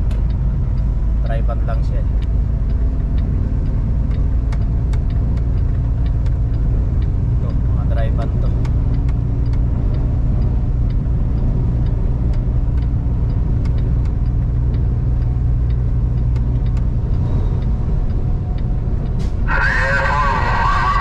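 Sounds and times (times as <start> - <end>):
truck engine and road drone: 0.0 - 21.0.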